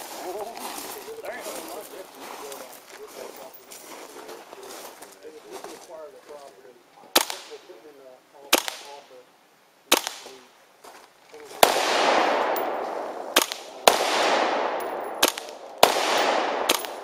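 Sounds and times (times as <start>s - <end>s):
rifle shots: 7.2s - 7.6s, 8.5s - 9.0s, 9.9s - 10.4s, 11.6s - 17.0s.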